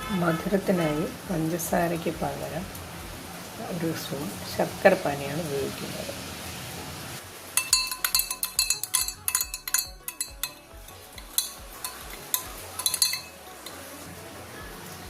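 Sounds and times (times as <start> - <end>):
spoon clinking against teapot: 7.6 - 13.8.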